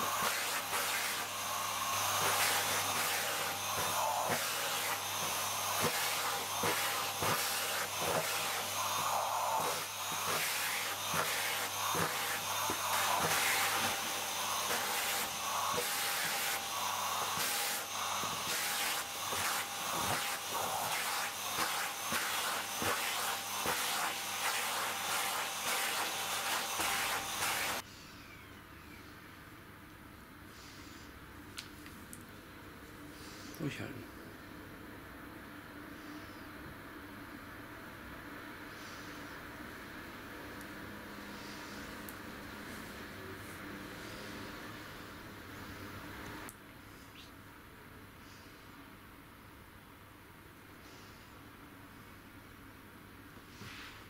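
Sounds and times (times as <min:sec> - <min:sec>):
vacuum cleaner running: 0:00.0 - 0:27.8, 0:38.2 - 0:46.5.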